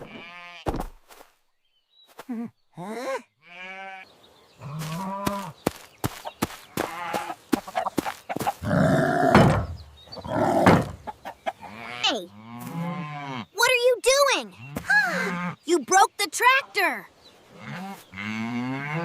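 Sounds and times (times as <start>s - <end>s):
farm animals bleating: 0.0s - 0.7s, 3.3s - 5.6s, 6.7s - 7.4s, 11.5s - 13.5s, 14.5s - 15.6s, 17.5s - 19.0s.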